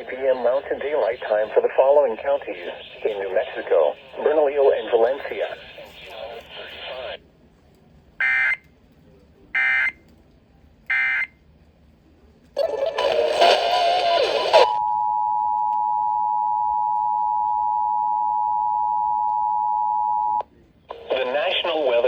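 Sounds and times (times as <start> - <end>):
noisy audio: 0.0 - 22.0.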